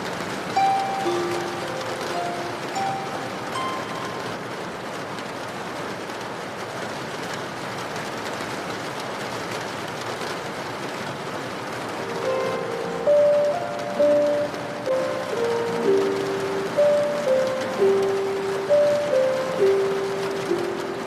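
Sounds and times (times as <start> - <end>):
steady rain: 0.0 - 21.0
soft harp notes: 0.6 - 4.4, 12.0 - 21.0.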